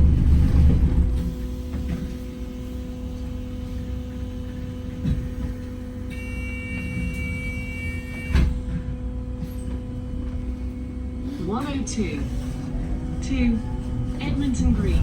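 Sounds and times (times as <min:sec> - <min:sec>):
bus electric hum: 0:00.0 - 0:15.0
bus doors shutting thump: 0:08.1 - 0:09.8.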